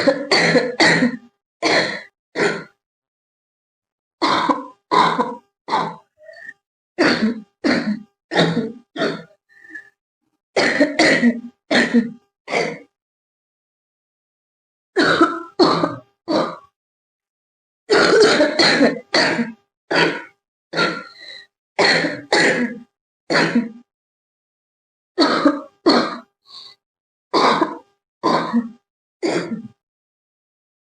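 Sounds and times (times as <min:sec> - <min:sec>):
girl coughing: 0:00.0 - 0:02.7, 0:07.0 - 0:09.3, 0:10.6 - 0:12.8, 0:15.0 - 0:16.6, 0:17.9 - 0:21.1, 0:21.8 - 0:23.8, 0:25.2 - 0:26.3, 0:27.4 - 0:29.7.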